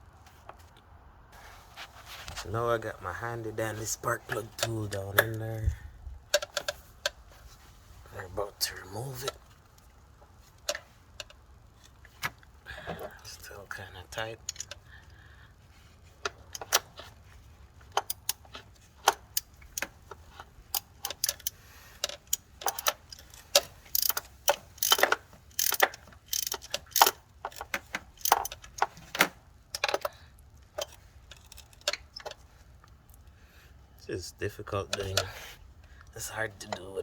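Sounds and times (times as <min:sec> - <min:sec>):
hand ratchet clicking: 0:18.0 - 0:29.0, 0:30.8 - 0:32.0.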